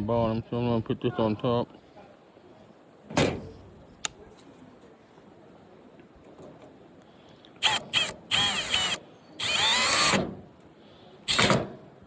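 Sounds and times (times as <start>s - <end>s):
power drill driving screw: 7.6s - 10.3s, 11.3s - 11.6s.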